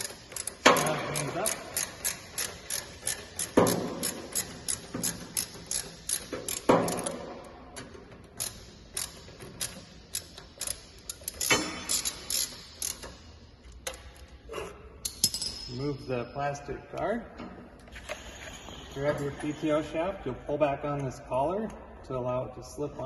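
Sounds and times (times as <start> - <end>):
socket ratchet clicking: 0.0 - 14.4.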